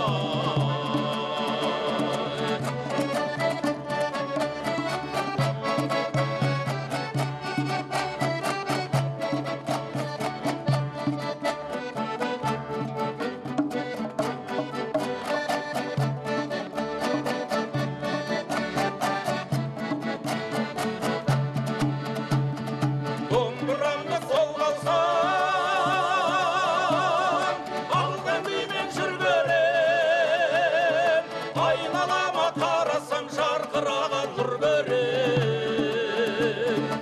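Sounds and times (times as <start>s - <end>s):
person singing with vibrato: 0.0s - 3.2s, 23.3s - 37.0s
accordion: 0.0s - 37.0s
rapid lute strumming: 0.0s - 37.0s.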